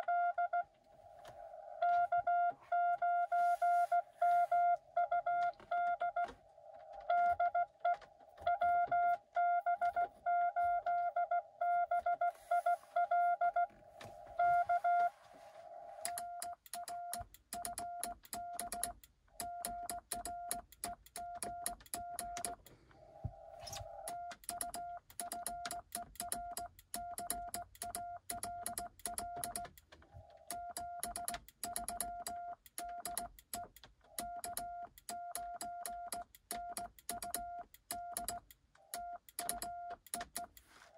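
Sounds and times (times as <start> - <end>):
morse code tones: 0.0 - 0.7, 1.7 - 6.3, 7.0 - 15.2
morse key contacts clicking: 16.0 - 22.7, 24.0 - 40.7.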